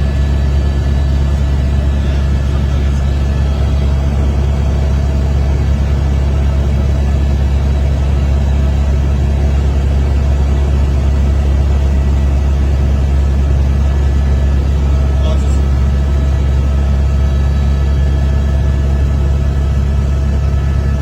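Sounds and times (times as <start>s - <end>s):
faint whine tones: 0.0s - 21.0s
helicopter rotor drone: 0.0s - 21.0s.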